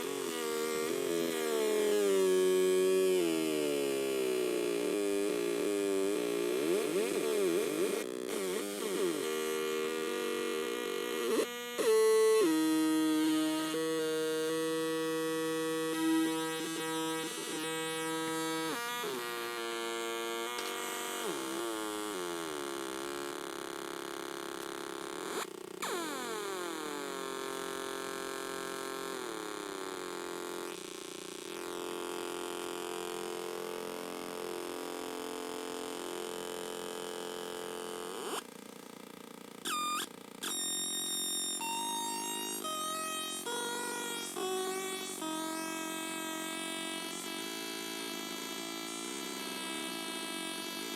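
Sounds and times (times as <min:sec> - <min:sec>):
harsh buzzing square-wave tones: 0:00.0 - 0:50.9.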